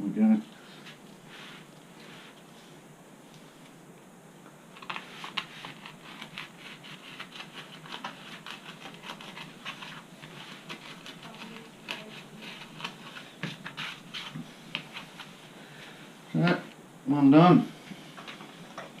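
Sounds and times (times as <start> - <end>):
sandpaper scratching on foam: 5.0 - 15.3.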